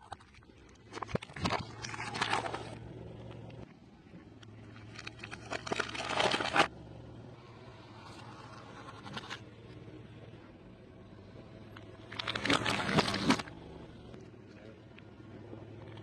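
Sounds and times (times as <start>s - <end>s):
crisp crunching bites: 4.8s - 6.7s, 12.1s - 13.5s.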